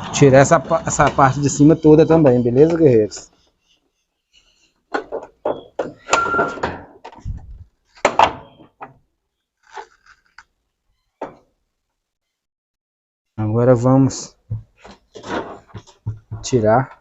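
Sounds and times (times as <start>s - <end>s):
plastic panels knocking and scraping: 0.0s - 3.4s, 4.9s - 9.0s, 14.4s - 17.0s.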